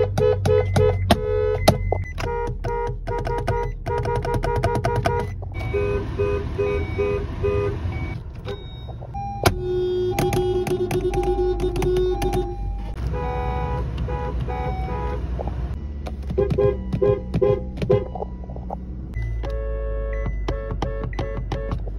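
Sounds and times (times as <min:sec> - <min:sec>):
two-note car horns honking: 0:00.0 - 0:08.0, 0:09.5 - 0:15.4, 0:19.2 - 0:21.9.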